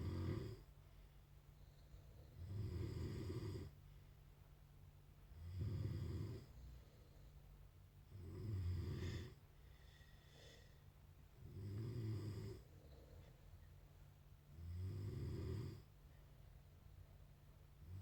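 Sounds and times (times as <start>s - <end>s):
deep snoring: 0.0s - 0.6s, 2.2s - 3.7s, 5.4s - 6.7s, 8.1s - 9.4s, 11.4s - 12.7s, 14.5s - 15.9s
soft breath: 0.6s - 2.5s, 6.4s - 7.9s, 9.0s - 11.4s, 12.5s - 14.0s.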